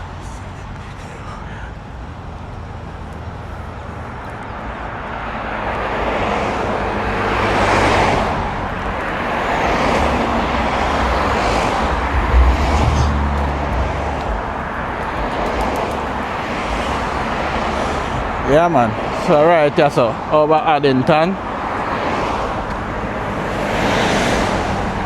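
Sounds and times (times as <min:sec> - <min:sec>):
heavy vehicle engine rumble: 0:00.0 - 0:19.0
vehicles passing: 0:00.0 - 0:25.0.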